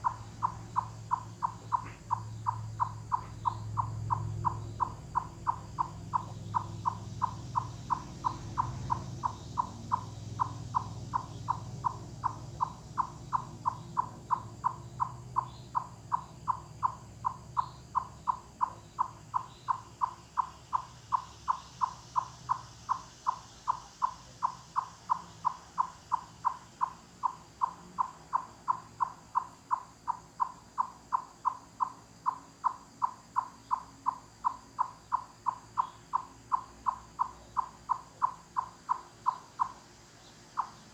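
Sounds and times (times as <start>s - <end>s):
chipmunk clucking call: 0.0s - 40.9s.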